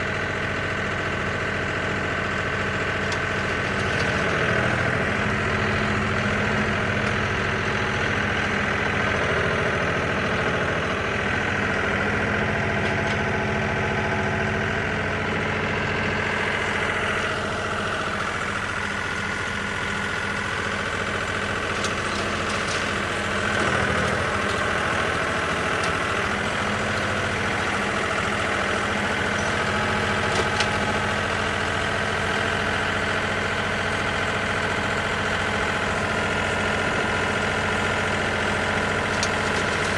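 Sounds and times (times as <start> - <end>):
tractor engine running: 0.0 - 39.9
baler working hay: 3.2 - 13.9, 16.3 - 32.2, 36.8 - 39.9.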